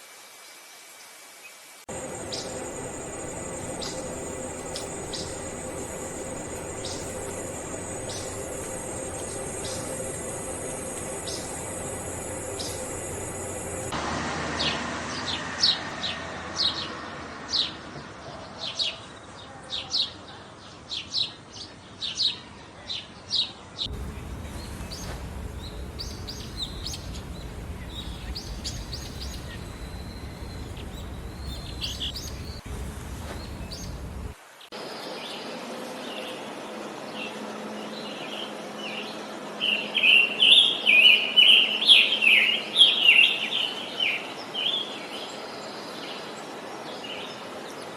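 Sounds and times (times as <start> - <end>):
steady background hiss: 0.0 - 14.0, 23.9 - 47.9
forest birds calling: 1.9 - 14.0, 23.9 - 34.4.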